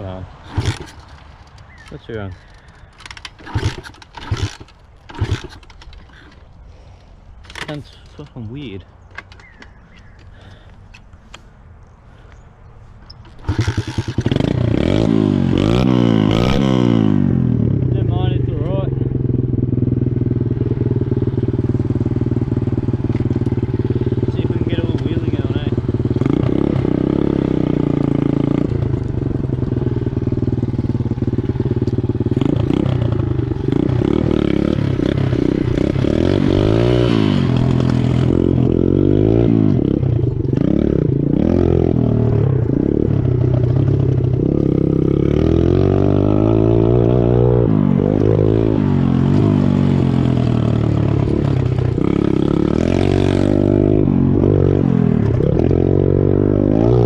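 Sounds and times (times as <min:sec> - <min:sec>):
motorbike engine revving: 0:00.0 - 0:06.4, 0:13.2 - 0:57.0
bike rattles and knocks: 0:00.5 - 0:06.5, 0:07.4 - 0:11.4.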